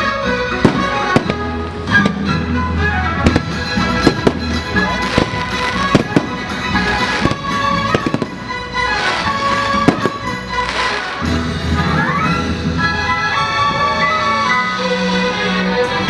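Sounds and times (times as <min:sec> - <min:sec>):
orchestral show music: 0:00.0 - 0:16.0
fireworks bangs: 0:00.6 - 0:02.4, 0:03.2 - 0:11.4.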